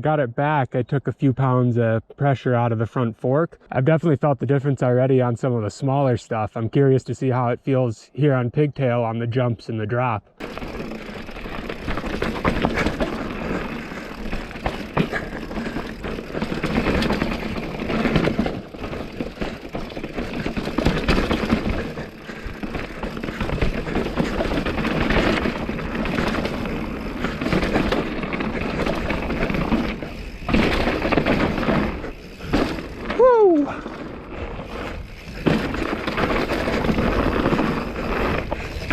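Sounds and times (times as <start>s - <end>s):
bike tyres rattling over rock: 10.4s - 38.9s.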